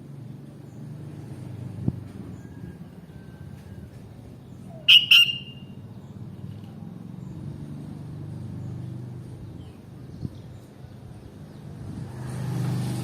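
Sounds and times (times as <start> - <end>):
bird whistled calls: 4.7 - 5.7.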